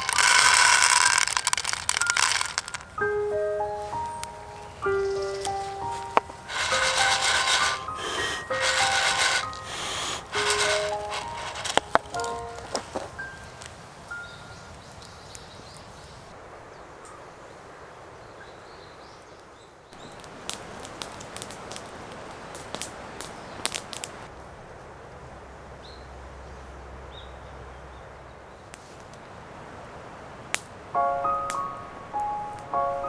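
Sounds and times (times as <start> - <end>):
sharp snaps or clicks: 0.0 - 3.0
steady hiss: 0.0 - 18.2, 20.0 - 25.6, 28.8 - 33.0.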